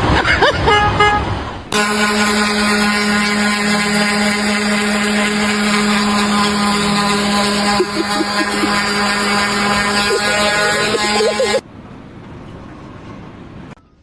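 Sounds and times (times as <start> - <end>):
vehicle horn toots: 0.7 - 11.6
steady machine drone: 1.5 - 11.7
voices: 1.6 - 11.6.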